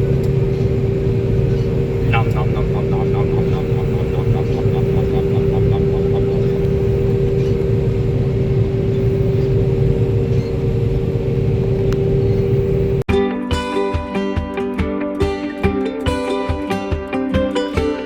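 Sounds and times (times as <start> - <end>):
large vehicle engine running: 0.0 - 13.1.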